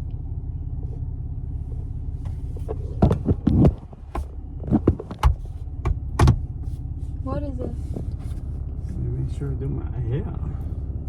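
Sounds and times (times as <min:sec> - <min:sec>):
car engine idling: 0:00.0 - 0:11.0
loud knocks and thumps: 0:03.0 - 0:06.5.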